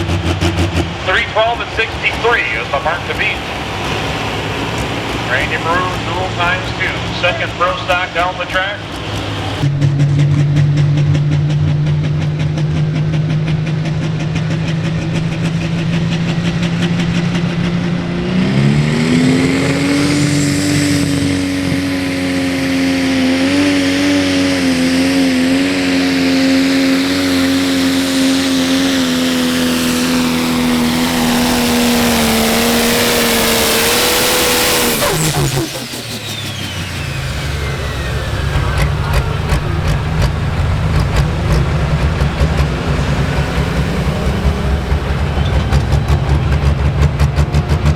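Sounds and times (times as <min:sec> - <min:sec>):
diesel engine at high revs: 0:00.0 - 0:47.9
turbo whistle and flutter: 0:34.8 - 0:40.3.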